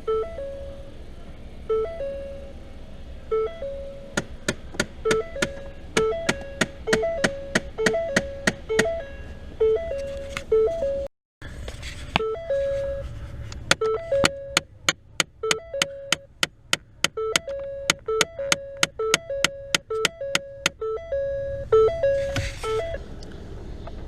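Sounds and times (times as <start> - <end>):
synthesizer melody: 17.2 - 23.0.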